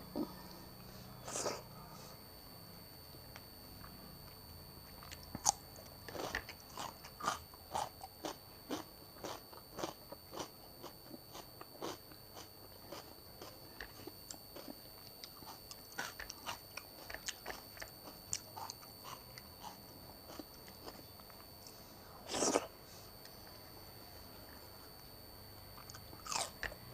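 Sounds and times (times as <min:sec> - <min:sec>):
chewing crunchy cucumber: 0:04.8 - 0:23.3, 0:25.8 - 0:26.9.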